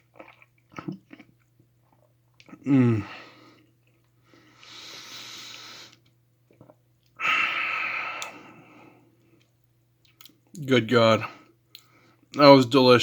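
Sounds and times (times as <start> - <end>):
man breathing heavily: 2.7 - 6.0, 7.2 - 9.1.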